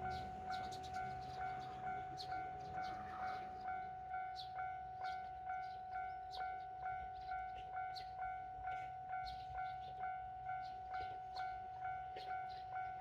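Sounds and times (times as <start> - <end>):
railroad crossing bell ringing: 0.0 - 13.0.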